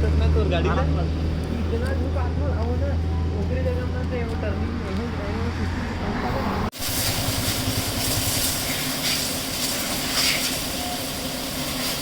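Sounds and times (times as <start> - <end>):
steady mechanical noise: 6.3 - 12.0
short hissing bursts: 6.8 - 12.0.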